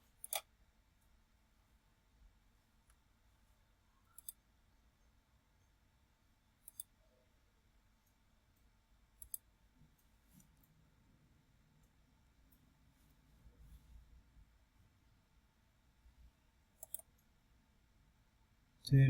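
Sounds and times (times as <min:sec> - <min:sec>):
computer mouse double-clicking: 0:16.8 - 0:17.1.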